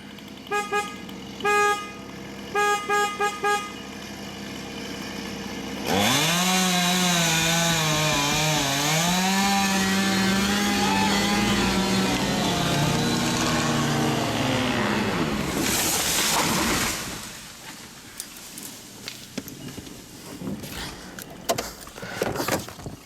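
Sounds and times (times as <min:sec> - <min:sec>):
chainsaw revving and cutting: 0:00.0 - 0:17.5
car horn toots: 0:00.5 - 0:03.8.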